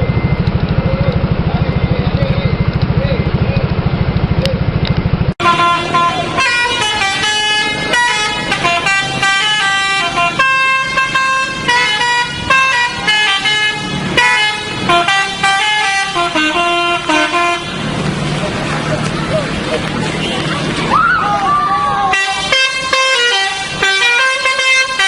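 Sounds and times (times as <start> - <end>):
engine idling: 0.0 - 6.9
musical air horn tune: 5.4 - 17.8, 22.1 - 25.0.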